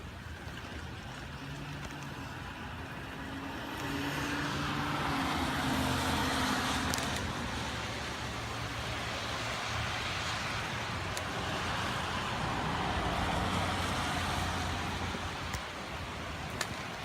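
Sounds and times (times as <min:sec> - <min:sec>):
water drips ticking: 0:00.1 - 0:06.3, 0:12.7 - 0:17.0
gusty wind: 0:03.2 - 0:17.0
heavy rain: 0:03.2 - 0:17.0.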